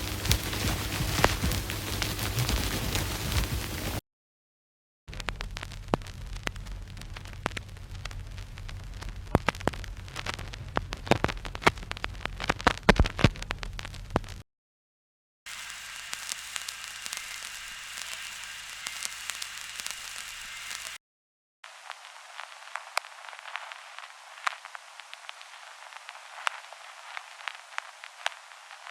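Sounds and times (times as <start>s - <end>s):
vinyl record crackle: 0.0s - 4.0s, 5.1s - 14.4s, 15.5s - 21.0s, 21.6s - 28.9s
low hum: 5.1s - 12.4s
faint steady whine: 15.5s - 21.0s, 21.7s - 28.9s.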